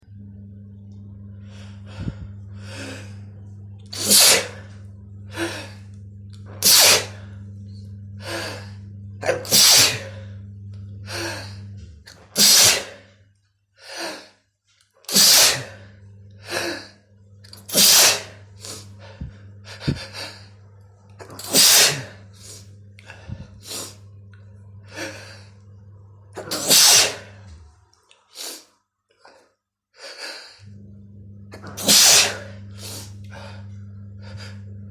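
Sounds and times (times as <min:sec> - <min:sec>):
gasping in-breaths: 0:01.4 - 0:09.1, 0:18.2 - 0:20.7, 0:21.3 - 0:25.8, 0:28.4 - 0:30.8
person sneezing: 0:04.0 - 0:04.7, 0:06.6 - 0:07.2, 0:09.2 - 0:10.2, 0:12.4 - 0:13.0, 0:15.1 - 0:15.8, 0:17.6 - 0:18.9, 0:21.3 - 0:22.6, 0:26.4 - 0:27.6, 0:31.7 - 0:33.2.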